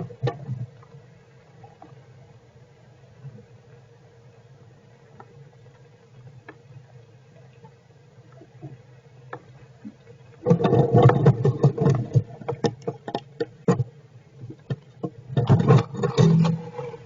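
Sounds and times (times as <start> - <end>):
crackling scrapes and clicks: 10.4 - 17.0.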